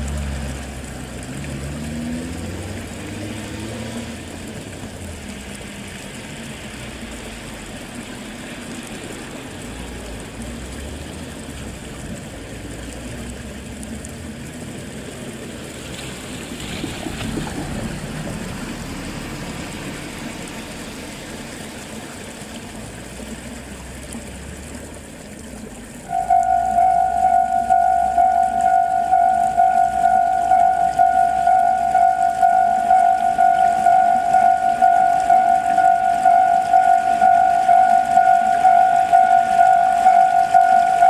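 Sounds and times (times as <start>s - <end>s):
level-crossing alarm ringing: 26.1s - 41.0s.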